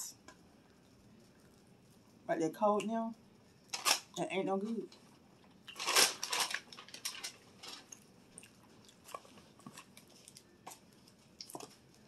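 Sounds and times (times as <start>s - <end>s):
person chewing crisp fries: 5.4s - 12.0s.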